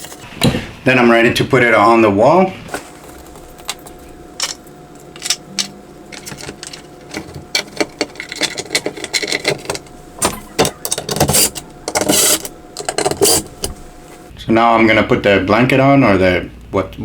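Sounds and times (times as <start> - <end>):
wood and metal hardware clattering: 0.0 - 0.6, 2.7 - 14.3.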